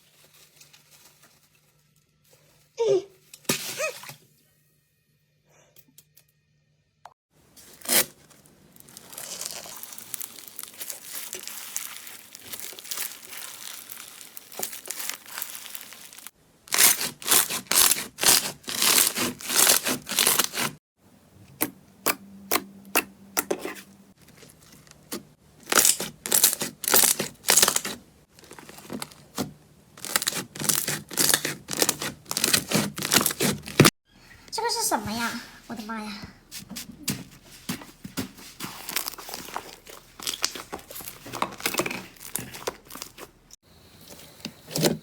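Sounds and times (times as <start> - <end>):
slime crackling: 8.7 - 20.8, 23.6 - 29.4, 30.0 - 33.9, 38.7 - 43.4.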